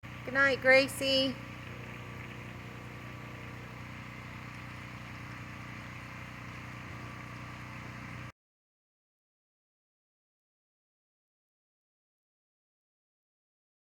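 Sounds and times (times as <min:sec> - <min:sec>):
machine engine idling: 0:00.0 - 0:08.3.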